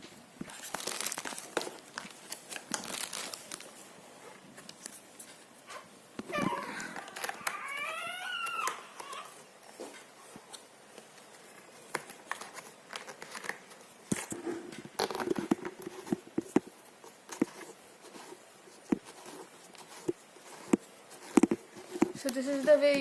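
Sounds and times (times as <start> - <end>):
crinkling: 0.0 - 23.0.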